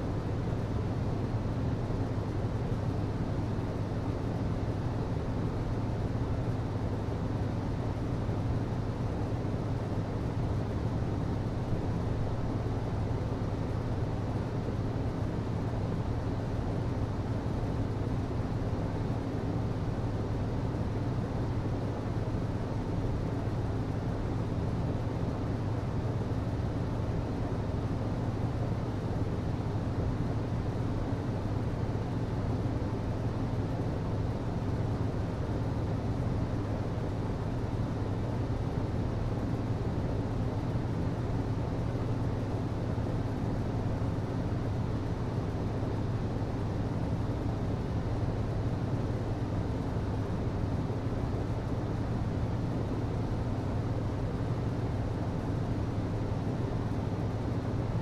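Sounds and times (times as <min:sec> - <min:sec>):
low mechanical hum: 0:00.0 - 0:58.0.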